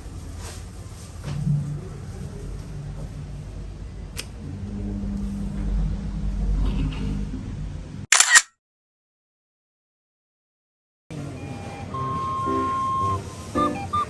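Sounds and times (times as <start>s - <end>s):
sharp click: 8.1s - 8.5s.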